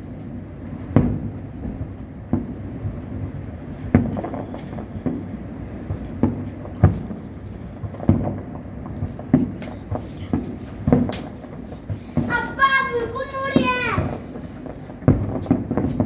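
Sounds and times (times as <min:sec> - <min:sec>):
distant fireworks booming: 0:00.0 - 0:16.0.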